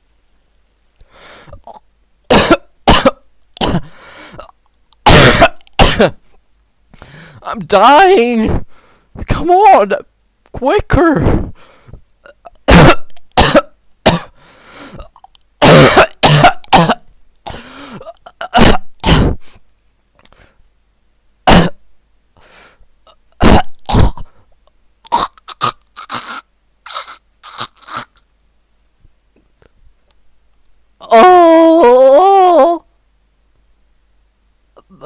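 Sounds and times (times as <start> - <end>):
person coughing: 1.6 - 4.5, 5.1 - 6.2, 12.7 - 14.4, 15.0 - 19.4, 21.5 - 21.8, 23.4 - 24.3
throat-clearing: 23.1 - 24.3, 25.1 - 28.2.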